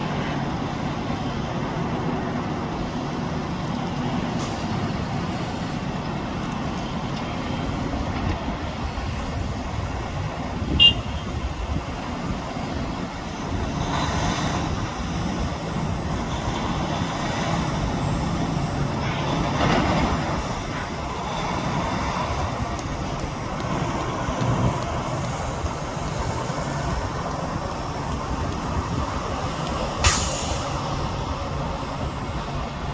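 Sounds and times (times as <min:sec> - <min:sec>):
diesel engine rumble: 0:00.0 - 0:32.9
high-pitched squeal or clank: 0:30.0 - 0:31.1.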